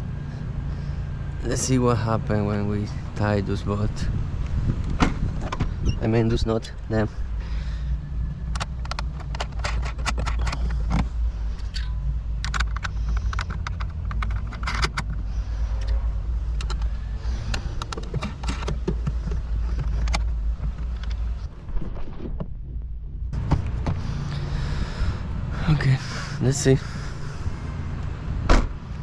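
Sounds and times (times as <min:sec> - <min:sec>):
steady low rumble: 0:00.0 - 0:29.0
tools clinking: 0:11.6 - 0:15.1.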